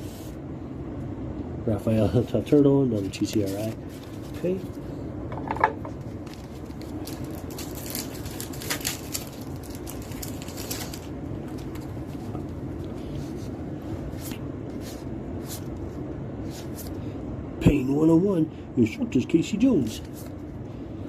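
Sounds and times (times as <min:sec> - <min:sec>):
steady background hum: 0:00.0 - 0:21.0
cards clicking and rustling: 0:06.2 - 0:12.3.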